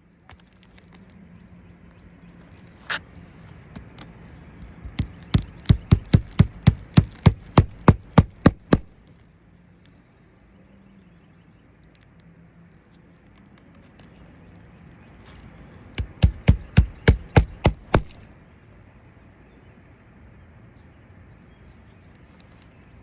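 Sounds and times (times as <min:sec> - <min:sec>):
hammer nailing shingles: 0:04.8 - 0:09.0, 0:16.0 - 0:18.2.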